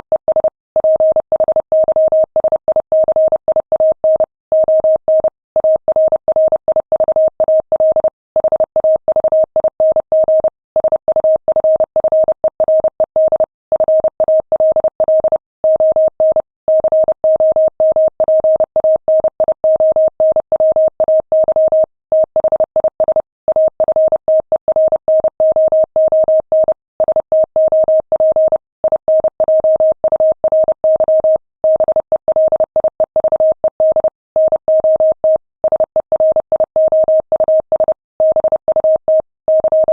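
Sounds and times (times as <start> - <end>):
morse code beeps: 22.4 - 39.9.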